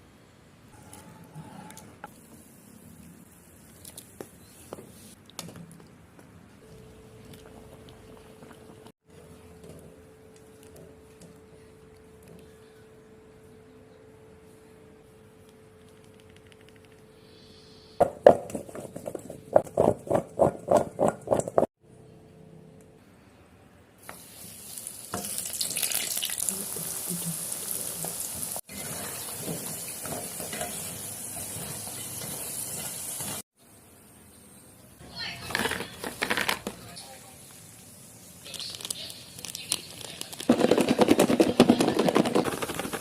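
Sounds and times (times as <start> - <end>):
food deep-frying in hot oil: 24.0 - 33.4.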